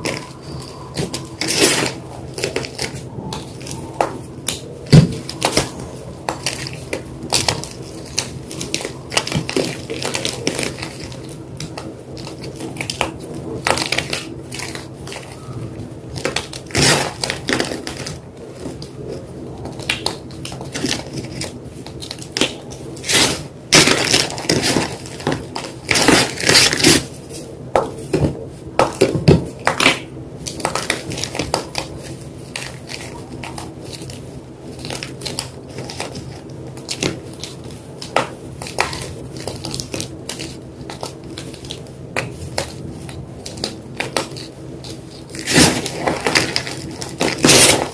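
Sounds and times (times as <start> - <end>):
steady low hum: 0.0 - 47.9
chalk being crunched: 29.8 - 47.9.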